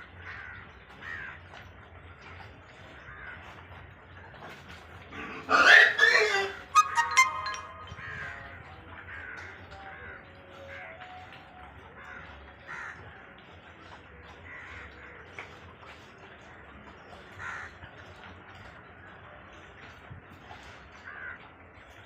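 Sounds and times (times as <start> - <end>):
animal calls rising and falling: 5.5 - 8.2.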